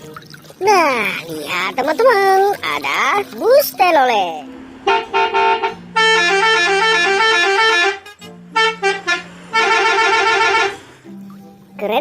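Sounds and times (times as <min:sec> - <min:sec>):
multi-tone bus horn jingle: 0:04.7 - 0:11.0.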